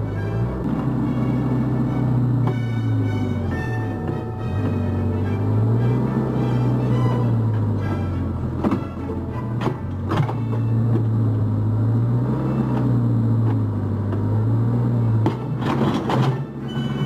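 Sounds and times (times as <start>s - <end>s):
excavator diesel engine droning: 0.0s - 17.0s
knocks and clatter: 3.8s - 5.2s, 8.5s - 11.4s, 15.2s - 17.0s.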